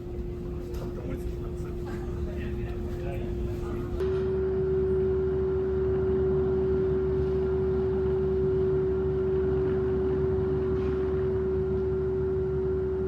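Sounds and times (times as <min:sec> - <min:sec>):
ferry machinery hum: 0:00.0 - 0:04.0.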